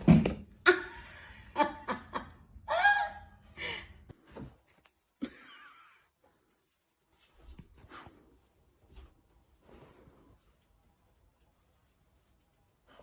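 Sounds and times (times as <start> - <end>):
person laughing: 5.2 - 6.1.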